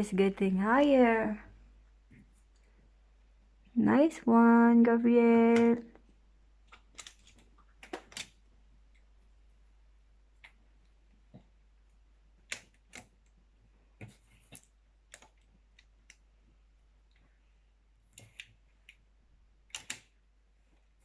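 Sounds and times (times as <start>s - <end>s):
magnetic blocks clicking together: 19.7s - 20.1s.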